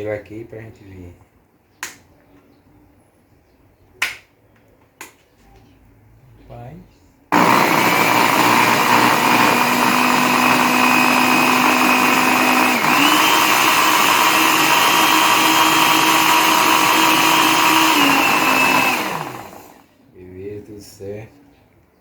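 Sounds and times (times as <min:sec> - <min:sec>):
blender motor whining: 0:07.3 - 0:19.8.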